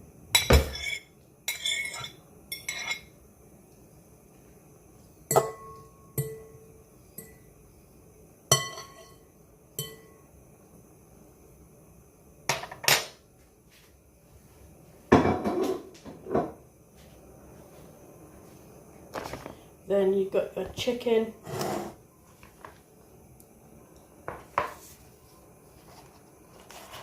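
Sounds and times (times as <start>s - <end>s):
clattering scrape: 21.4s - 22.0s.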